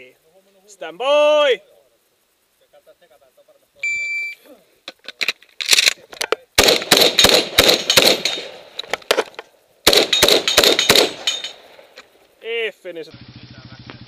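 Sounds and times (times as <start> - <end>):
rapid shotgun fire: 6.6 - 9.2, 9.8 - 11.8.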